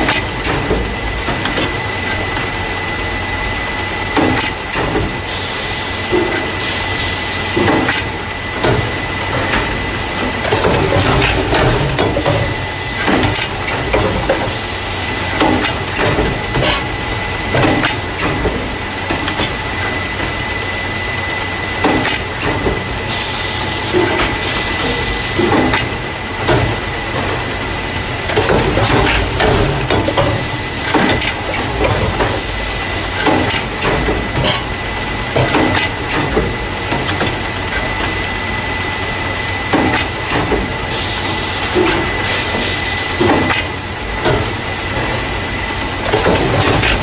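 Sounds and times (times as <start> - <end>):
mechanism clunks and knocks: 7.5 - 14.6, 15.3 - 20.4, 23.9 - 27.6, 28.2 - 32.5, 33.1 - 38.2, 39.6 - 41.0, 41.6 - 45.4, 46.0 - 47.0.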